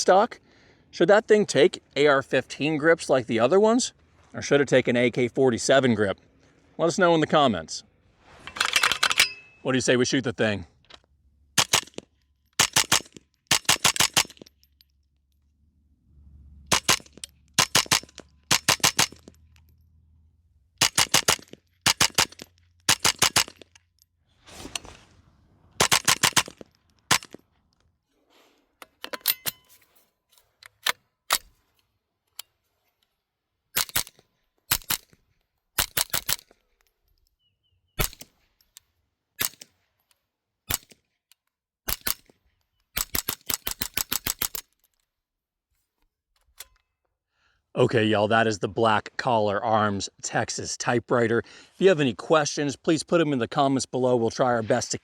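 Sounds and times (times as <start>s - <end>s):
rifle gunshots: 11.6s - 12.0s, 12.6s - 14.4s, 16.7s - 19.2s, 20.8s - 23.6s, 25.8s - 27.3s.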